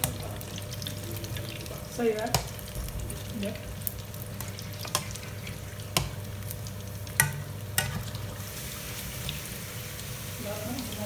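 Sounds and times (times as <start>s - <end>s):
chicken feet sizzling in oil: 0.0s - 11.0s.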